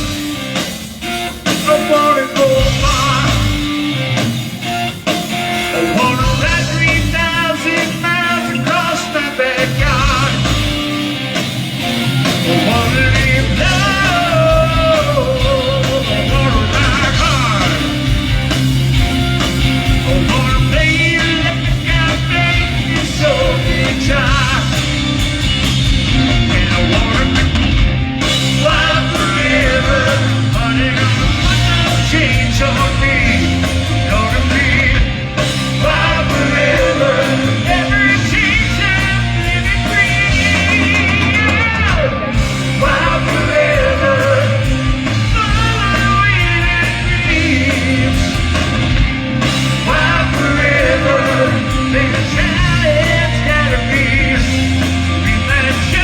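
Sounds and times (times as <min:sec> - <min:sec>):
hard rock band playing: 0:00.0 - 0:56.0
person singing: 0:12.1 - 0:18.1, 0:35.7 - 0:48.6, 0:49.8 - 0:56.0.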